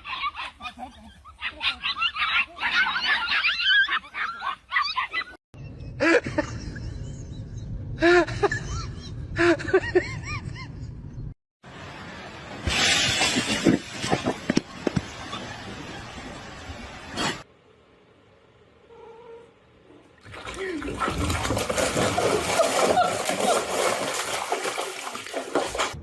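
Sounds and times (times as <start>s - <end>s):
low rumble: 5.6s - 11.3s.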